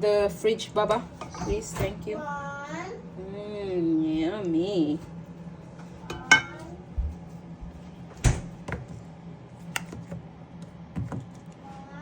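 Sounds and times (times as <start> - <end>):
steady low hum: 0.0 - 12.0
cutlery clinking on a plate: 6.1 - 6.6.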